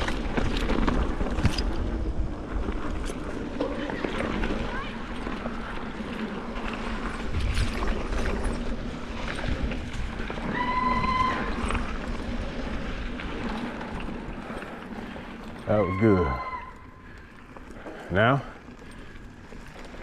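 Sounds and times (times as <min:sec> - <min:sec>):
bike rattling and clicking: 0:00.0 - 0:20.0
bike tyres rolling on dirt: 0:00.0 - 0:20.0
brief high squeal: 0:15.9 - 0:16.9.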